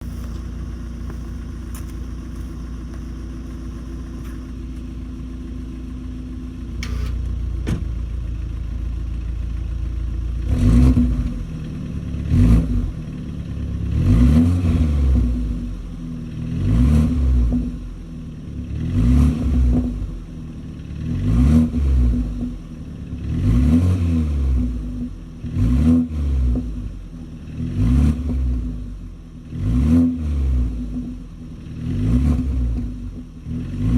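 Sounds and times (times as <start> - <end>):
car engine idling: 0.0 - 14.3, 15.0 - 23.6
car engine revving: 10.4 - 18.0, 18.6 - 20.3, 21.0 - 31.2, 31.8 - 33.9.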